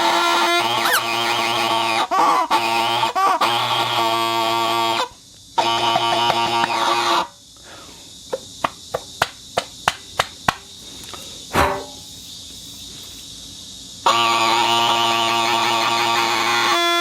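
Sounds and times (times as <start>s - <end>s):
reedy whistle buzzing: 0.0s - 7.4s, 14.0s - 17.0s.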